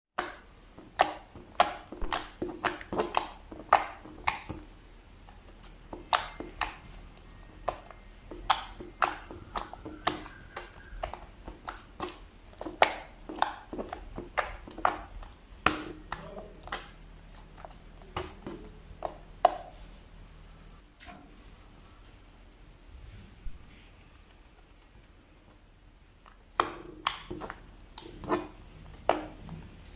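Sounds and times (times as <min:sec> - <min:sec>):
slime popping and clicking: 0:00.2 - 0:04.7, 0:07.6 - 0:19.7.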